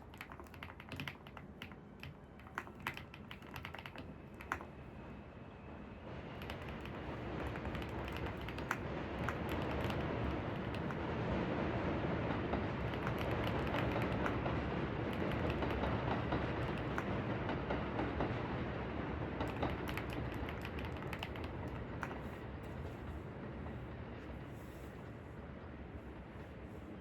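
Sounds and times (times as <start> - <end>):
computer keyboard typing: 0.0 - 4.8, 6.3 - 11.2, 12.7 - 17.3, 19.4 - 22.4
low ambient noise: 0.0 - 27.0.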